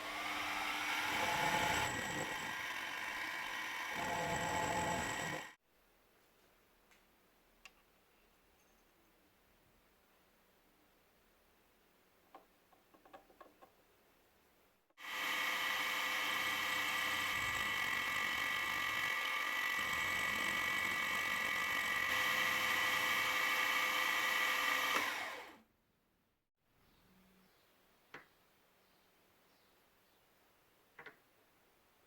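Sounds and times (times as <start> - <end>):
machine-tool motor whining: 0.0 - 5.6, 15.0 - 25.6.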